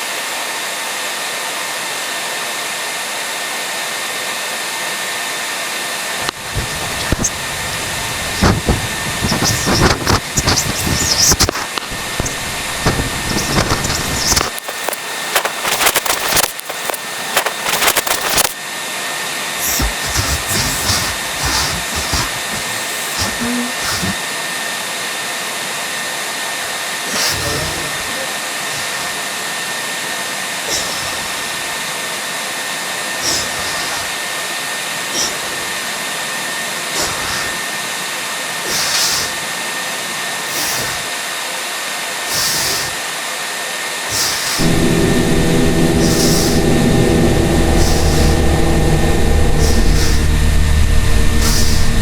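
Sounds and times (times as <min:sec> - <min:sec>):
faint whine: 0:06.2 - 0:18.6, 0:44.6 - 0:52.0
steady hiss: 0:06.2 - 0:18.6, 0:19.6 - 0:24.4, 0:38.7 - 0:39.6, 0:40.4 - 0:41.2, 0:42.3 - 0:43.1, 0:44.1 - 0:52.0.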